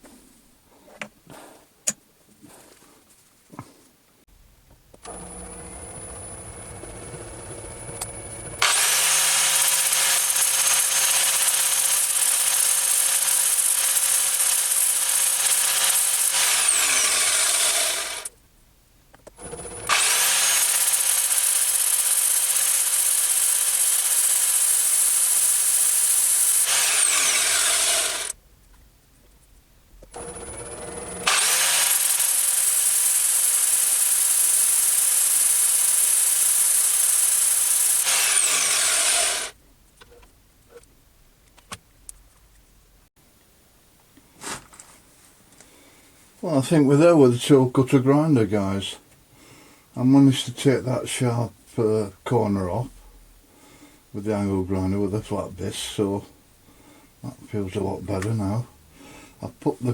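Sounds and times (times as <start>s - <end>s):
angle grinder grinding metal: 5.1s - 18.3s, 19.4s - 28.4s, 30.1s - 39.6s.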